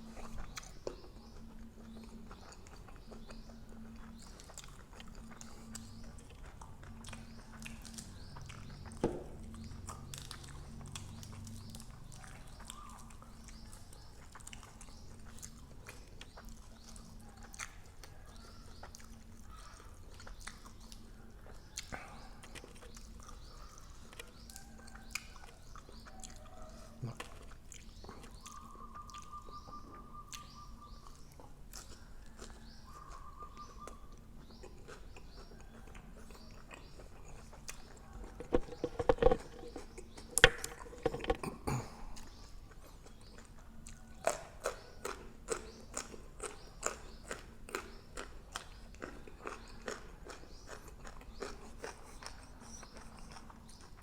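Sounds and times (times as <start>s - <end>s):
chewing with mouth clicks: 0.0s - 54.0s
crunching and clatter: 34.4s - 54.0s.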